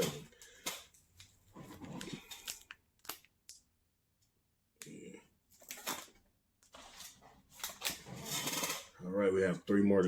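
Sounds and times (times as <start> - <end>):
plastic wrappers crinkling: 0.0 - 3.7.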